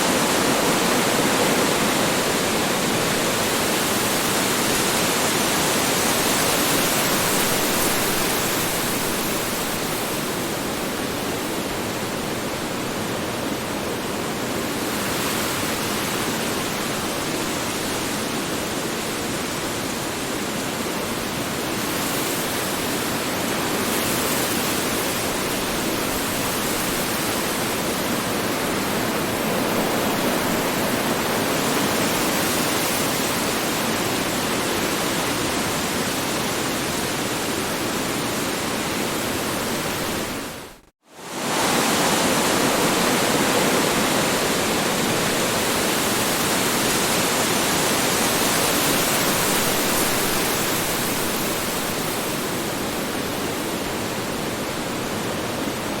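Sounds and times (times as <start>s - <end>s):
strong wind blowing: 25.2s - 56.0s.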